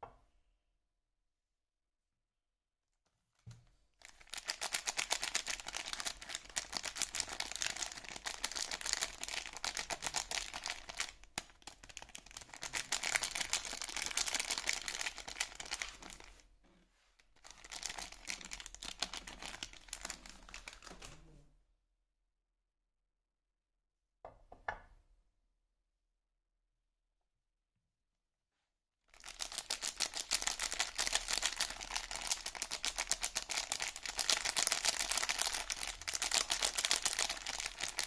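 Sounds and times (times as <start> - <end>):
soap packaging crinkling: 4.0 - 16.5, 17.4 - 21.2, 29.2 - 38.0.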